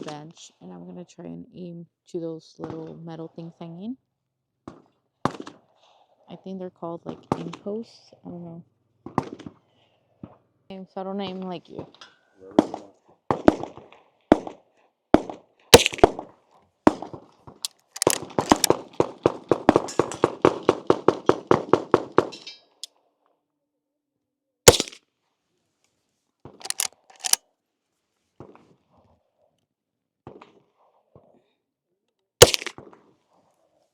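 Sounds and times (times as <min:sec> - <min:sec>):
rifle gunshots: 0:15.8 - 0:16.2, 0:18.0 - 0:18.9, 0:24.7 - 0:25.0, 0:26.6 - 0:27.4, 0:32.4 - 0:32.8.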